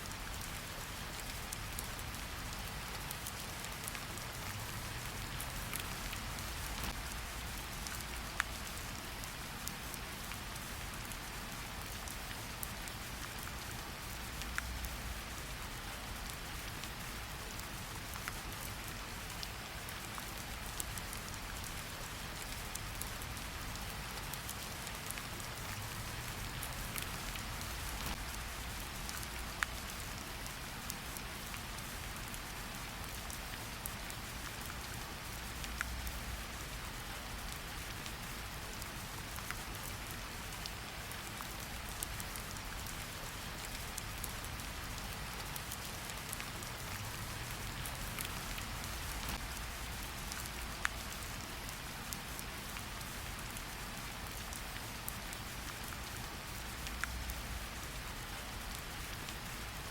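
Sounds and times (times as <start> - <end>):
steady rain: 0.0 - 59.9
wood fire crackling: 47.6 - 50.7.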